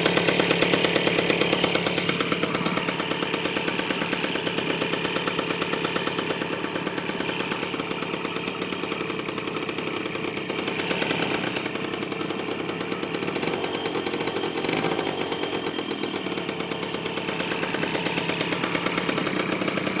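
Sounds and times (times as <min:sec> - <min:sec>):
scooter engine idling: 0:00.0 - 0:20.0.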